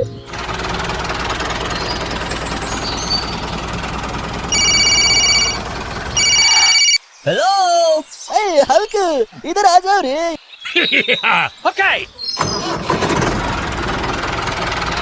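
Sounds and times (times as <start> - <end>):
electronic beeps: 4.5 - 5.6, 6.2 - 7.0.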